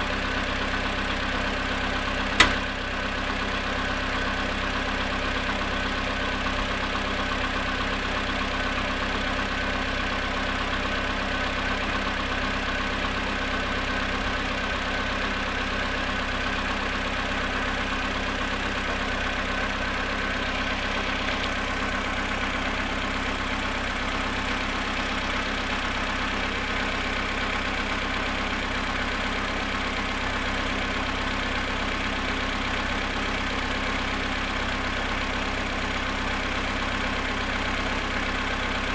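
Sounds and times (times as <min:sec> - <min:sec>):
car engine idling with knock: 0:00.0 - 0:38.9.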